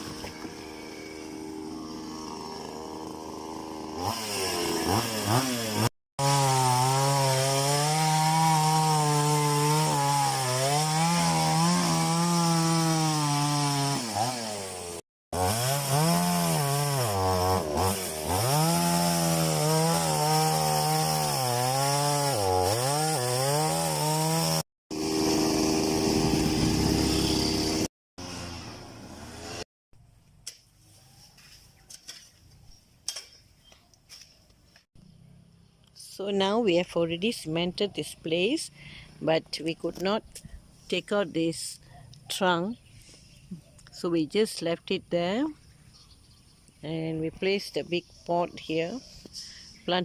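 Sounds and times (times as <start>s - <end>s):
chainsaw cutting tree trunk: 0.0s - 29.7s.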